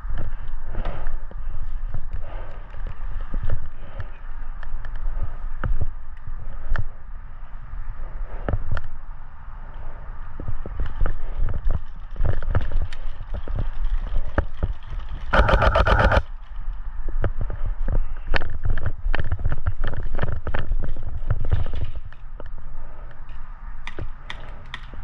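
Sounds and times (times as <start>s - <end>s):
sharp clicks and knocks: 10.6s - 16.6s.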